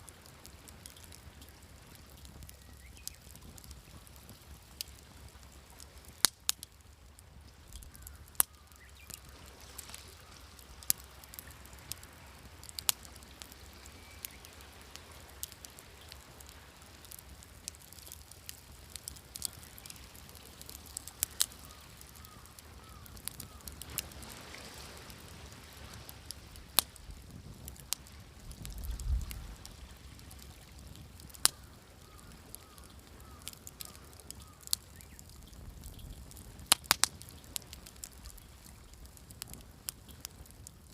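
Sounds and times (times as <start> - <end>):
wood fire crackling: 0.0 - 40.9
waves: 7.6 - 34.8.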